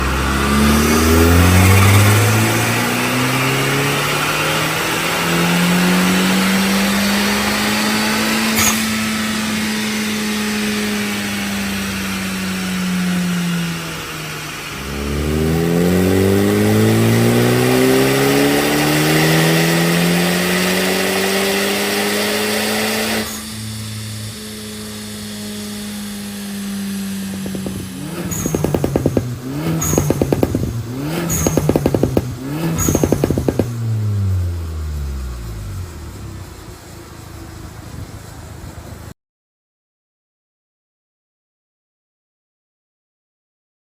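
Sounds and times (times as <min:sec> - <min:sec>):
exhaust crack: 0:00.0 - 0:05.4, 0:13.6 - 0:38.4
car engine revving: 0:00.0 - 0:39.0
exhaust crackles and pops: 0:27.1 - 0:36.9.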